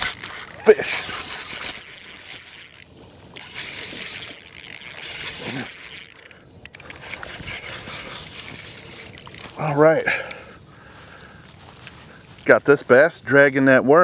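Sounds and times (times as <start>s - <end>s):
fishing reel whirring: 0.0s - 9.7s.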